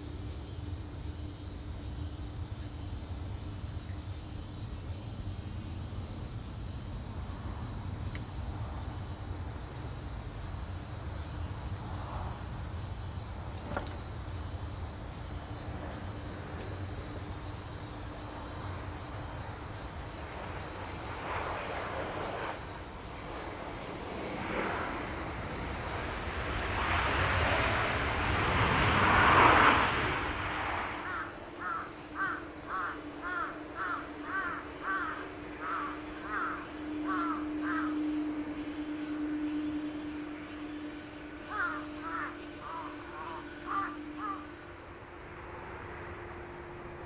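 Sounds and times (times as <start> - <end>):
steady low hum: 0.0 - 47.0
broad rushing noise: 14.8 - 47.0
crow cawing: 31.0 - 38.0, 41.4 - 44.6.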